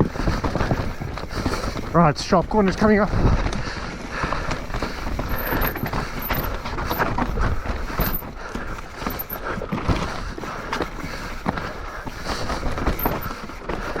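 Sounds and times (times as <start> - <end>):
bike knocking and rattling: 0.0 - 14.0
bike tyres rolling over dirt: 0.0 - 14.0.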